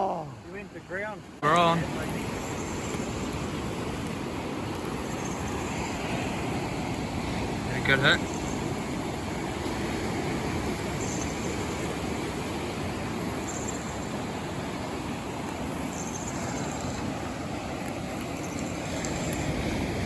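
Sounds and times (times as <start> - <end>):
surf breaking on shore: 0.0 - 20.0
wind buffeting microphone: 1.0 - 20.0.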